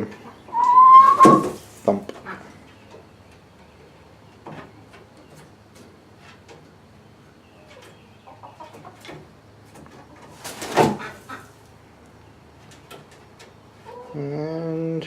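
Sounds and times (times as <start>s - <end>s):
short rising cry: 0.5s - 1.6s
chicken landing with a thump: 10.4s - 11.1s.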